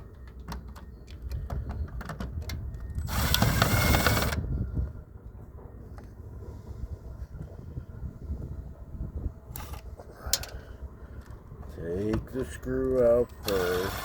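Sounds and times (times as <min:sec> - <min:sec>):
power tool running: 0:03.1 - 0:04.4, 0:13.4 - 0:14.0.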